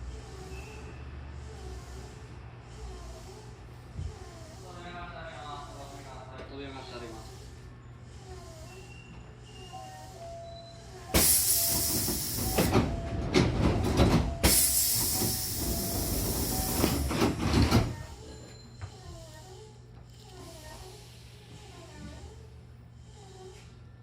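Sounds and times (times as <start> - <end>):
pneumatic door air hiss: 10.8 - 12.9, 14.4 - 18.1.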